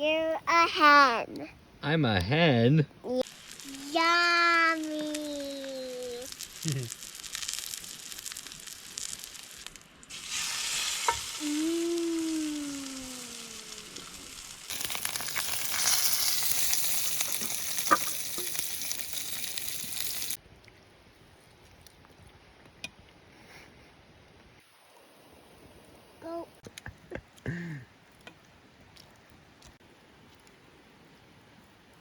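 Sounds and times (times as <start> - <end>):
food sizzling in a pan: 3.2 - 20.4.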